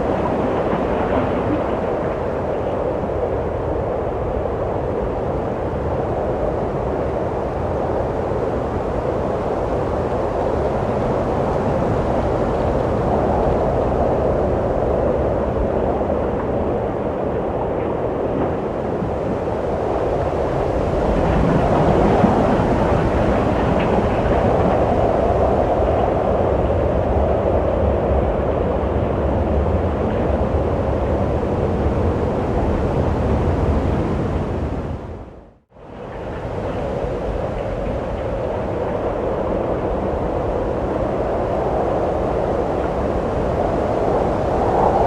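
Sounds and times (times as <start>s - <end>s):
wind rushing: 36.7s - 45.0s.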